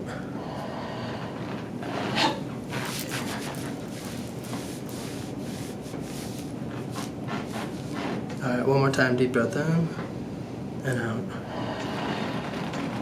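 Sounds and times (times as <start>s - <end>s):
hands rubbing on clothing: 2.7s - 8.3s.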